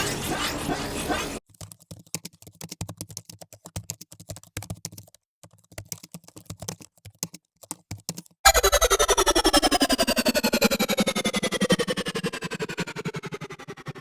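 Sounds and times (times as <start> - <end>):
rapid irregular clicking: 1.4 - 8.4.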